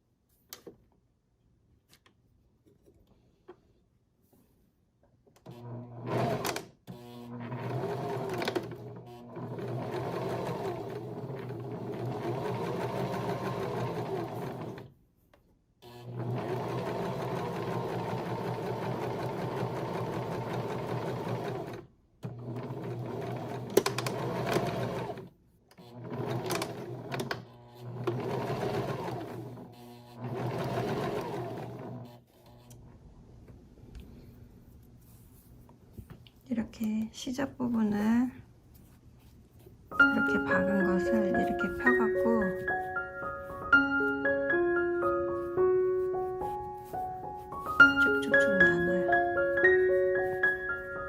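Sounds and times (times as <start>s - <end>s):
sewing machine stitching: 5.4s - 14.9s, 15.8s - 32.8s.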